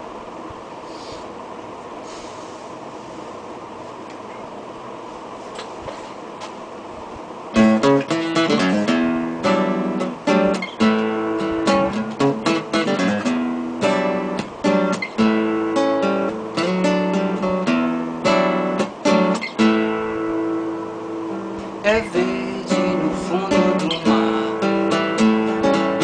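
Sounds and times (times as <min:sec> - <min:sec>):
acoustic guitar playing: 0:07.5 - 0:26.0.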